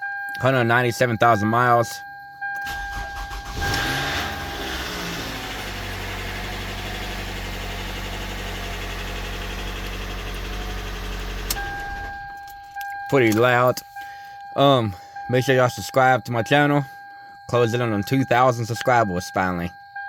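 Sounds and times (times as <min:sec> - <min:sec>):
car engine starting and idling: 0:02.6 - 0:14.0.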